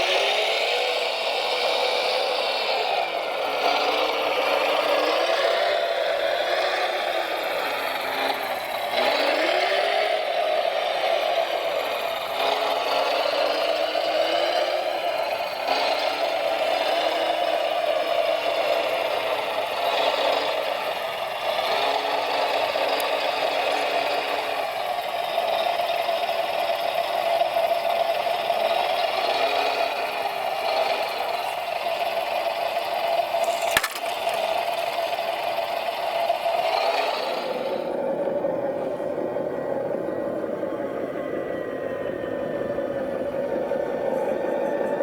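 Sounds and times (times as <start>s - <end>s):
electric motors whining: 28.9s - 36.1s
light rattling: 33.4s - 35.2s.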